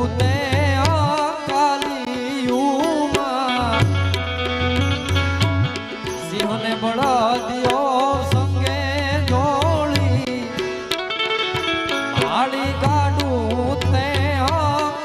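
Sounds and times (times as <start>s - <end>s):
folk music with drums and bass: 3.5s - 15.0s.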